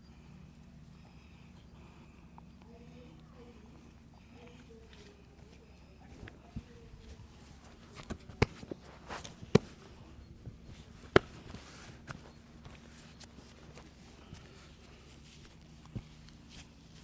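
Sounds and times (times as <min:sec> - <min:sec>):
hands snapping and slapping: 0:07.9 - 0:09.9, 0:10.8 - 0:13.8.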